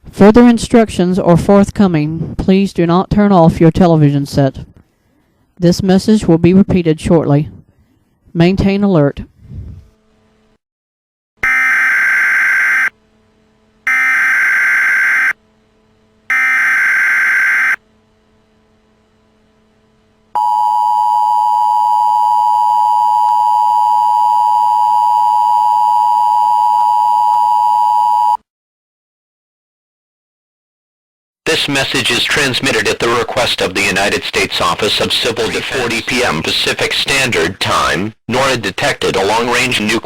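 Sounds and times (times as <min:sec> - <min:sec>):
harsh digital data bursts: 0:11.4 - 0:12.9, 0:13.9 - 0:15.4, 0:16.3 - 0:17.8.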